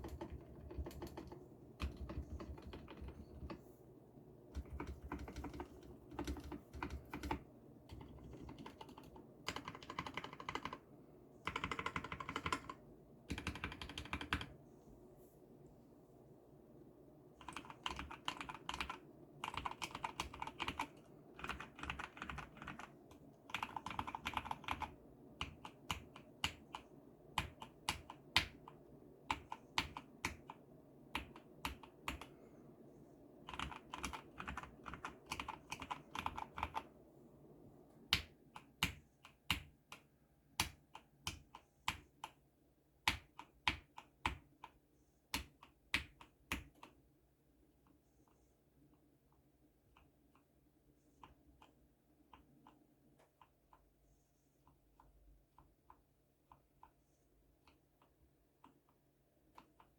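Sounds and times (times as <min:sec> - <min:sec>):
mechanical keyboard typing: 0:00.0 - 0:03.6, 0:04.6 - 0:10.8, 0:11.4 - 0:14.6, 0:17.4 - 0:32.3, 0:33.4 - 0:36.9, 0:43.0 - 0:44.8.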